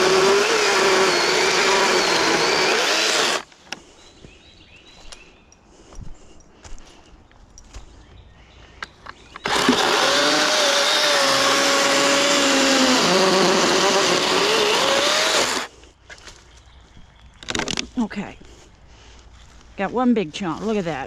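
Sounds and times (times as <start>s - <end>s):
electric chainsaw cutting wood: 0.0s - 3.5s, 9.4s - 15.7s.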